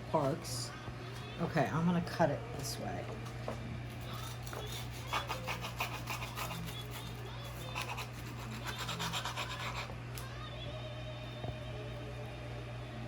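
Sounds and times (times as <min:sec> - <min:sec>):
knife sawing through toasted bread: 0:04.2 - 0:10.0.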